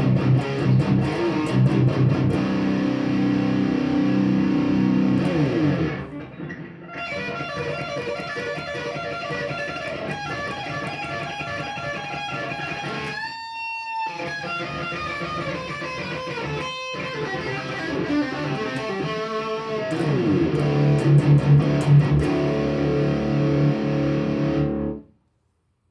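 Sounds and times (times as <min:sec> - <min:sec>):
low guitar riffing: 0:00.0 - 0:10.9, 0:17.4 - 0:25.0
electric guitar lead lines: 0:00.0 - 0:25.1.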